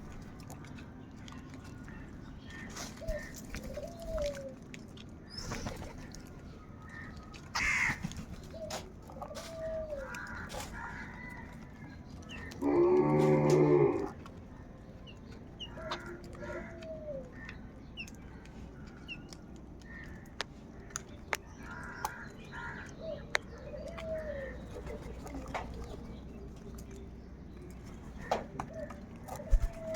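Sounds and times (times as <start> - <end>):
crows cawing: 7.5 - 8.0, 9.4 - 11.4, 21.6 - 23.2.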